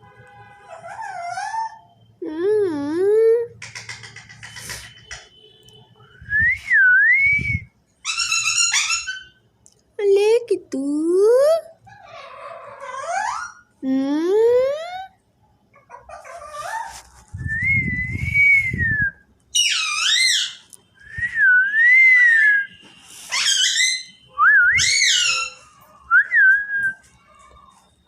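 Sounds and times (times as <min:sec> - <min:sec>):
parrot whistling: 0:19.5 - 0:27.0.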